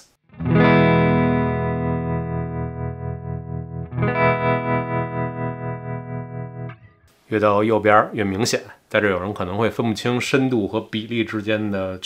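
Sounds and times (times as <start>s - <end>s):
electric guitar with tremolo: 0.0s - 7.1s.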